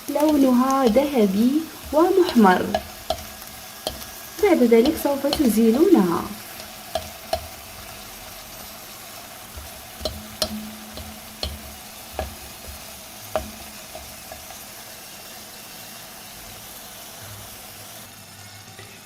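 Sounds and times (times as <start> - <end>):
garlic sizzling in oil: 0.0 - 19.0
utensil knocking against pan: 0.2 - 6.0, 6.6 - 7.6, 9.5 - 14.5.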